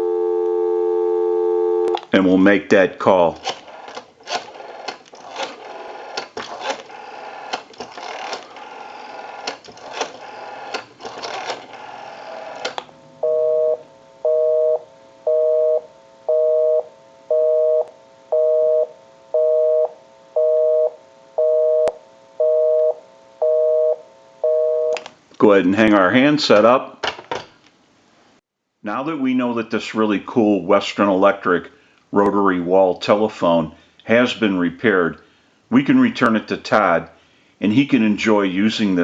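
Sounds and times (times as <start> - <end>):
two-tone busy signal buzz: 0.0 - 2.0, 11.9 - 25.0
rotary dial clicking: 3.4 - 12.9
telephone line hiss: 5.6 - 25.0.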